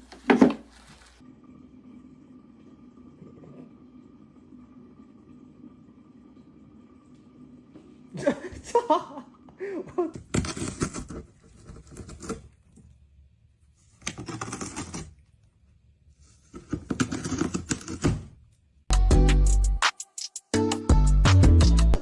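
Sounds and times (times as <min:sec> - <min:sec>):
loud music: 0:18.9 - 0:22.0.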